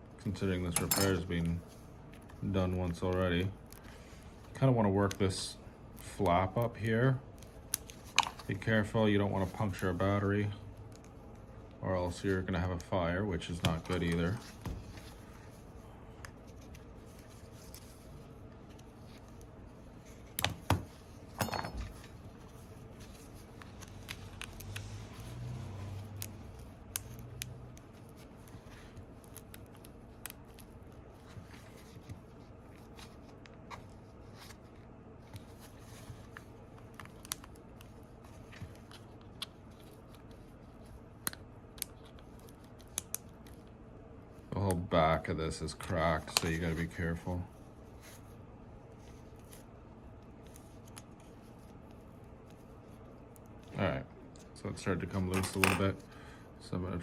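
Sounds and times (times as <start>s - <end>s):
faint low hum: 0.0s - 57.0s.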